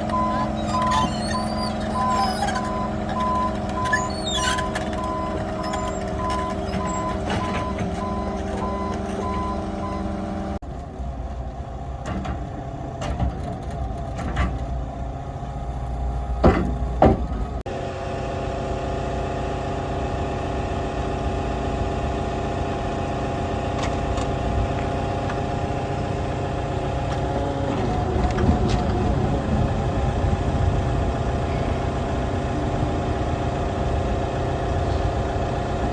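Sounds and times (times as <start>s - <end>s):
beeping alarm: 0.0s - 10.6s
asphalt paver engine running: 0.0s - 35.9s.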